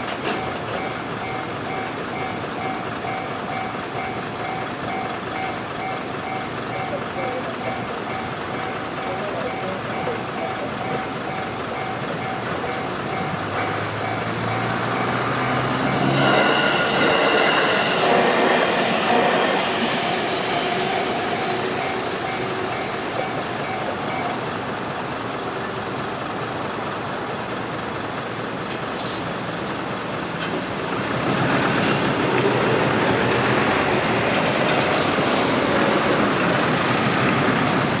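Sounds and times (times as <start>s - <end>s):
crossing warning bell ringing: 0.0s - 24.7s
electric train running: 0.0s - 28.2s.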